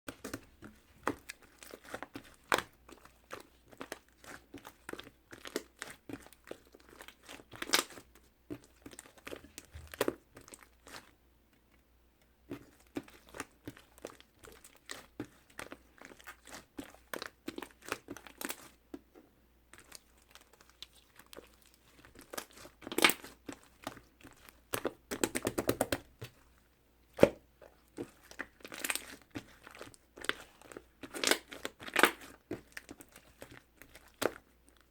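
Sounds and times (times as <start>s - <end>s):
slime crackling and popping: 0.2s - 8.0s, 19.8s - 26.4s, 27.1s - 34.9s.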